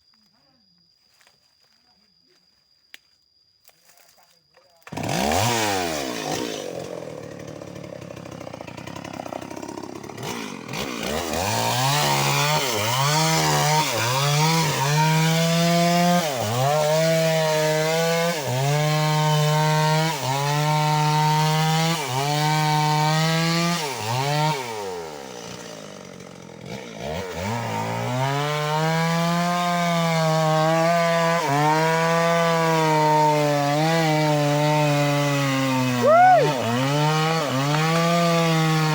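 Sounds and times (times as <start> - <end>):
chainsaw cutting wood: 4.8 - 38.9.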